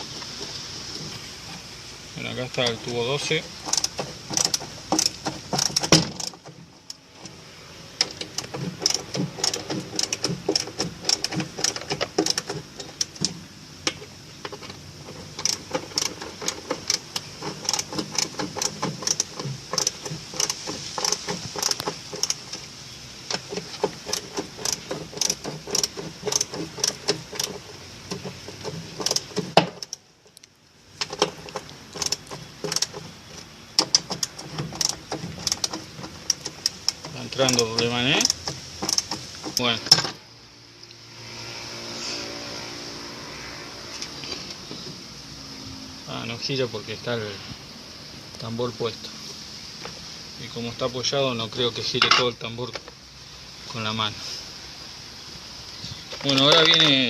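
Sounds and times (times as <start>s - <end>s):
ratchet wrench clicking: 3.6s - 7.0s, 8.0s - 13.3s, 13.9s - 22.6s, 23.3s - 30.0s, 31.0s - 33.0s, 33.8s - 39.7s.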